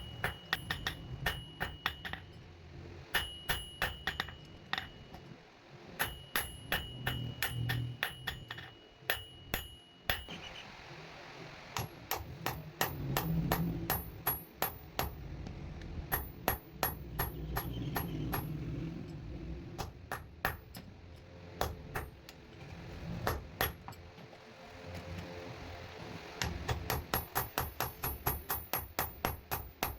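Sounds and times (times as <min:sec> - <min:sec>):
hammer clanging on anvil: 0:00.0 - 0:02.4, 0:03.1 - 0:05.3, 0:06.0 - 0:10.4
metallic ringing tone: 0:03.1 - 0:05.3, 0:06.0 - 0:10.6.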